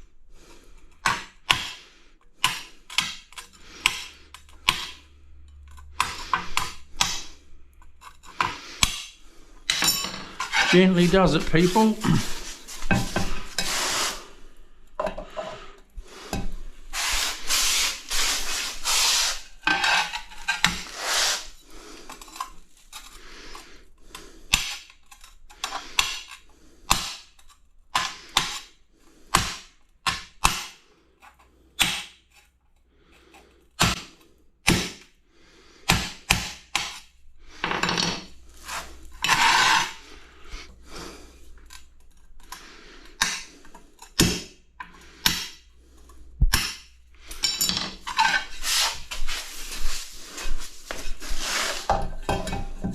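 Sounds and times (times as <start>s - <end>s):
tool chipping ceramic tile: 1.0s - 1.8s, 2.4s - 7.3s, 8.0s - 12.3s, 24.5s - 28.7s, 29.3s - 32.5s, 33.3s - 35.1s, 35.9s - 37.1s, 37.7s - 40.0s, 41.6s - 45.7s, 46.4s - 48.5s
tool scraping tile: 2.4s - 14.4s, 15.0s - 28.7s, 35.9s - 40.7s, 41.3s - 52.9s.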